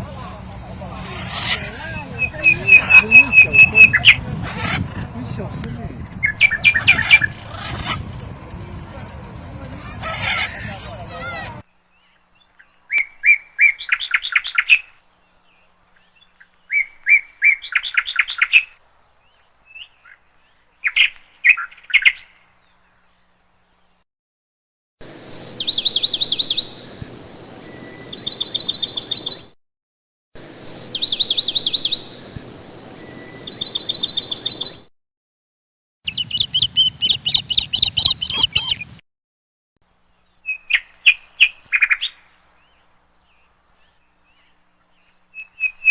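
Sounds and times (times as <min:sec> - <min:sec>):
parrots chirping: 0:01.0 - 0:04.8, 0:36.1 - 0:39.0.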